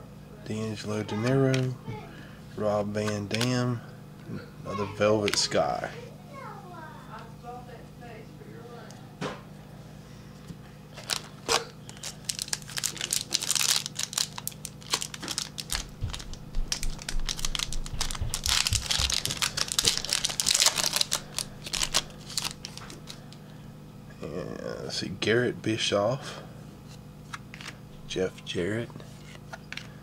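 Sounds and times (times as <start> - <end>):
wrapper crinkling and crackling: 11.0 - 23.3.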